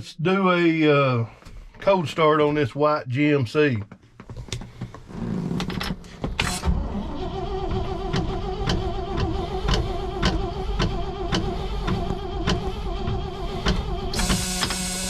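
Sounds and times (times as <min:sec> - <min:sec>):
truck engine starting and idling: 0:05.4 - 0:15.0.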